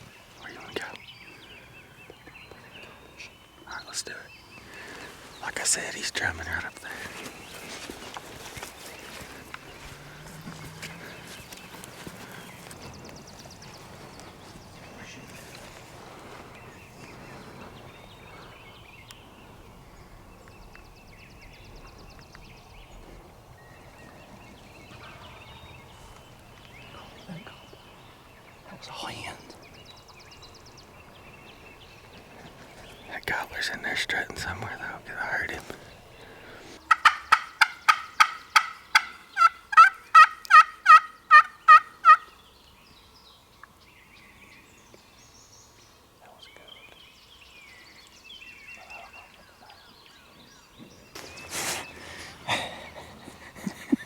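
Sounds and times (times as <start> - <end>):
songbirds chirping: 0.0 - 54.0
low outdoor rumble: 4.7 - 36.9
turkey clucking and yelping: 36.8 - 42.3.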